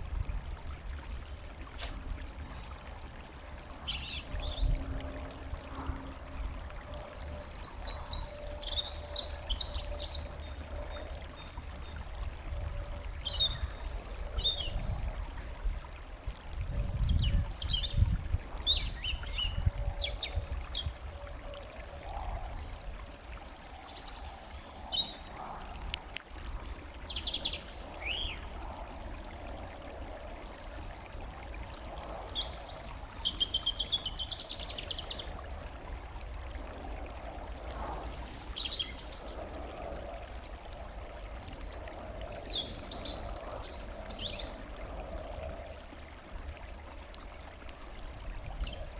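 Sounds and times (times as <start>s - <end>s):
songbirds chirping: 3.4s - 4.9s, 17.0s - 35.5s, 42.0s - 47.0s.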